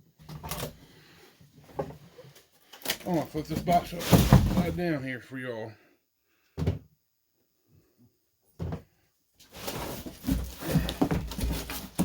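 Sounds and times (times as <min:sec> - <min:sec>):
knocking and scraping of box: 0:03.5 - 0:04.8, 0:08.6 - 0:12.0
cardboard box thumps: 0:09.7 - 0:12.0.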